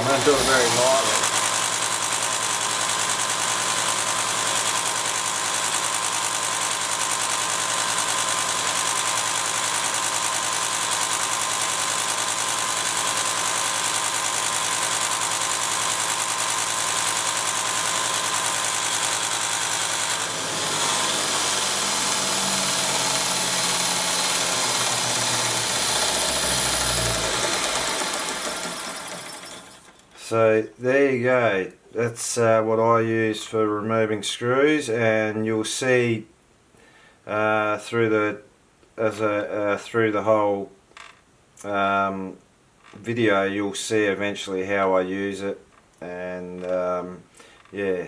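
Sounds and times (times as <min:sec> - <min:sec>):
bench grinder grinding metal: 0:00.0 - 0:30.1.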